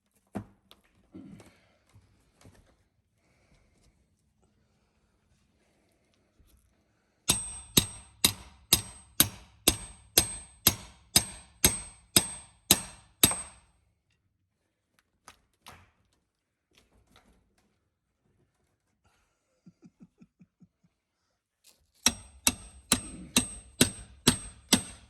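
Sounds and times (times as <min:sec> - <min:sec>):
hammer striking metal: 0:07.3 - 0:13.7, 0:22.0 - 0:25.0.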